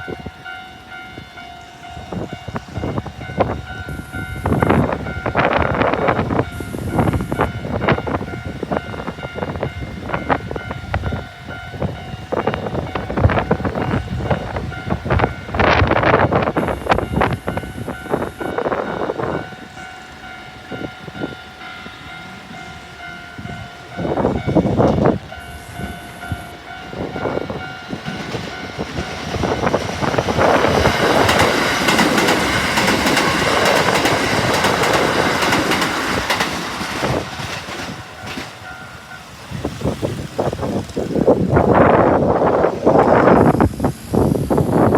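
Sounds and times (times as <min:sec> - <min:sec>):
train wheels clattering: 0:07.0 - 0:42.0.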